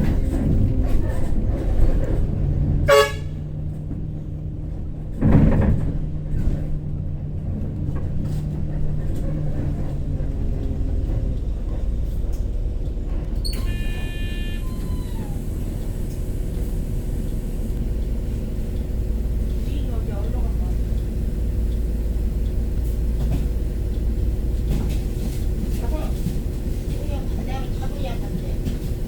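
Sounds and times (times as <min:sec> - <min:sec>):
bus engine running: 0:00.0 - 0:29.0
horn toot: 0:02.9 - 0:03.4, 0:13.6 - 0:14.9.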